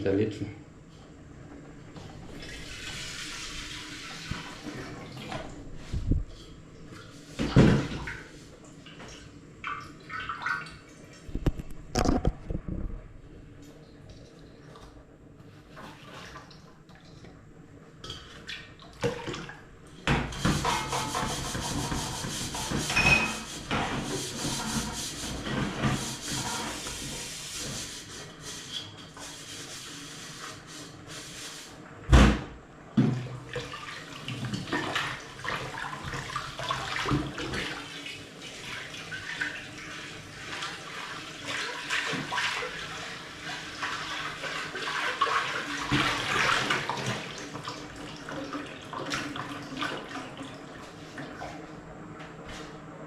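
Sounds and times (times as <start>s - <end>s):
water sloshing and splashing: 1.6s - 31.0s, 33.0s - 52.7s
scrubbing a pot: 20.3s - 31.8s, 34.0s - 47.7s.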